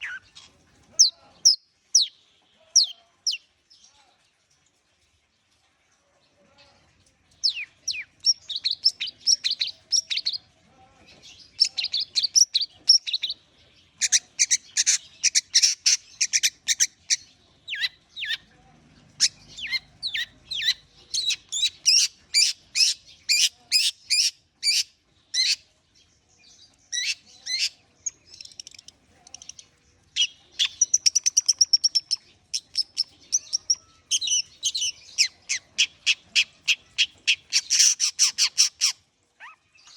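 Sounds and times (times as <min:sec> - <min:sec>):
bird chattering chirps: 0:11.6 - 0:13.4, 0:14.0 - 0:18.5, 0:19.1 - 0:25.6, 0:26.9 - 0:39.6.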